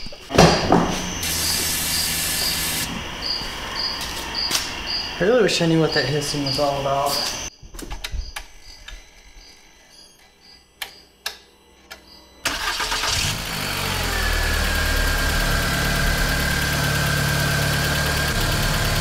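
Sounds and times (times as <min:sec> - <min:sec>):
thin steady whine: 0:00.0 - 0:13.0
engine cranking and idling: 0:12.4 - 0:19.0.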